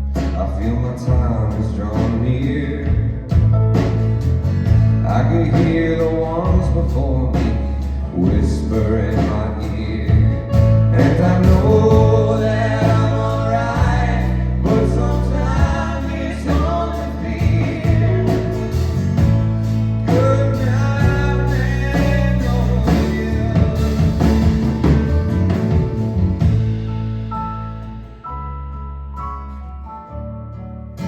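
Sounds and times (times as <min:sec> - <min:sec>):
live band playing a song: 0:00.0 - 0:28.4
person singing: 0:11.0 - 0:18.9, 0:20.0 - 0:24.8.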